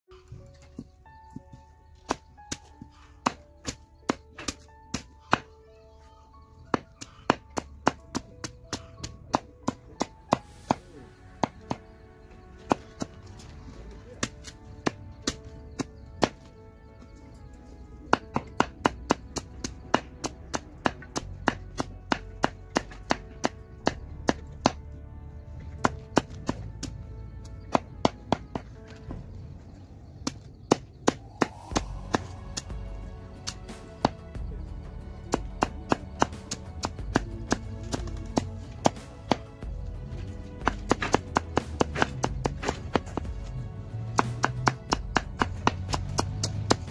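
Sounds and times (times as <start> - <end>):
blade chopping plant stem: 18.1 - 24.8, 30.2 - 32.8, 35.2 - 39.6, 40.6 - 43.4, 44.1 - 46.9.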